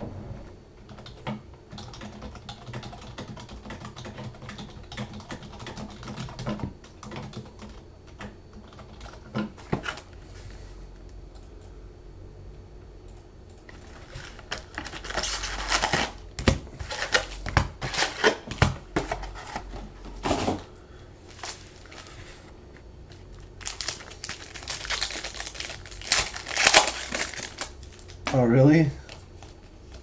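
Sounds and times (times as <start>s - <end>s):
card pack wrappers crinkling: 13.8s - 16.2s, 23.1s - 30.0s.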